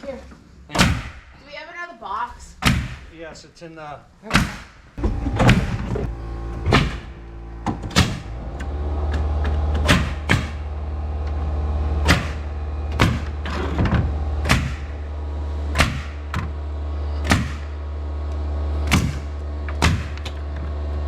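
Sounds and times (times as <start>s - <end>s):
air compressor running: 4.8s - 21.0s
nail gun shots: 9.8s - 10.6s, 12.0s - 12.4s, 14.4s - 14.9s, 18.9s - 20.3s.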